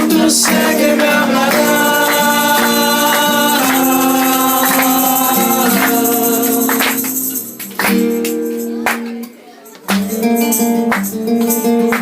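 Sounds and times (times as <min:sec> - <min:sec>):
sharp percussive hits: 0:00.0 - 0:08.4.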